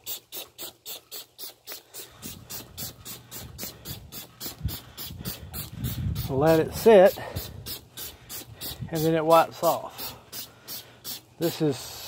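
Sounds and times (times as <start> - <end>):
hissing scrubbing strokes: 0.0 - 12.0.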